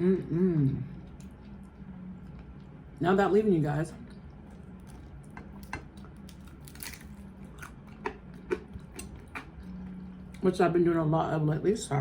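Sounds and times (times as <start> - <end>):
faint low hum: 0.0 - 12.0
crunchy chewing: 4.3 - 10.4.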